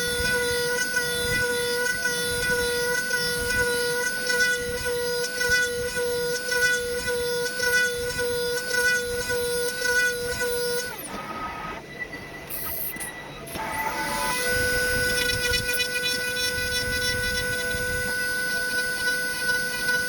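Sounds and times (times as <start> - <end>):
router spindle whining: 0.0 - 20.0
milling cutting noise: 12.5 - 20.0.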